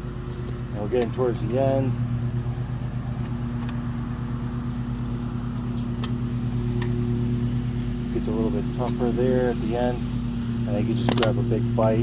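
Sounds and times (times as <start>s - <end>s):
lawnmower engine running: 0.0s - 12.0s.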